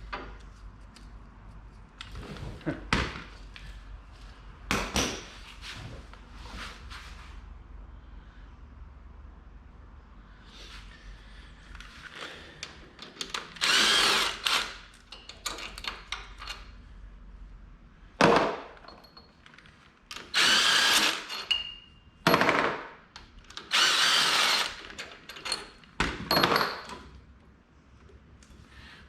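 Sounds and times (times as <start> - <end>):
power tool driving bolts: 13.0 - 16.4, 20.1 - 21.6, 23.5 - 25.7.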